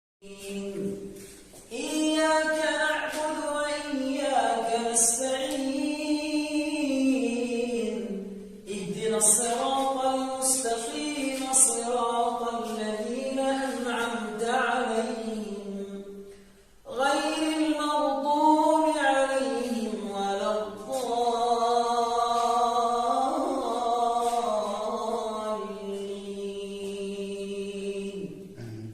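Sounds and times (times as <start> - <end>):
man reciting melodically: 28.6 - 28.9.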